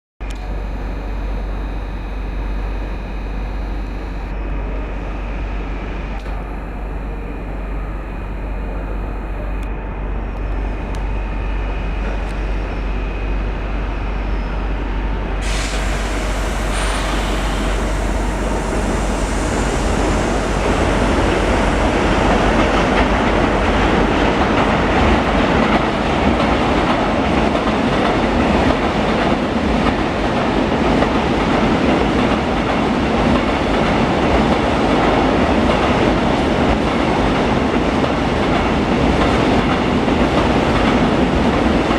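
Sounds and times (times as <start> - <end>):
freight train wheels rumbling on rails: 9.4 - 41.9.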